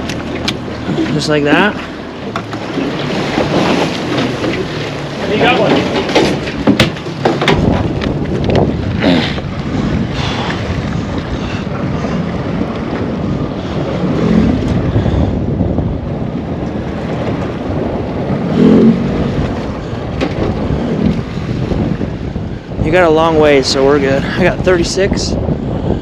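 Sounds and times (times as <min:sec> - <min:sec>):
water washing: 0:00.0 - 0:15.4
wind buffeting microphone: 0:00.0 - 0:26.0.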